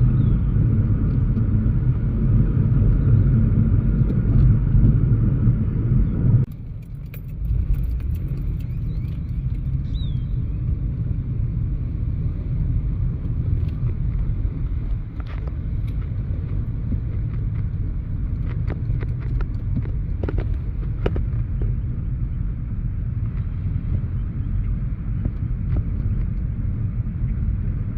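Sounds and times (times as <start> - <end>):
low rumble: 0.0 - 27.9.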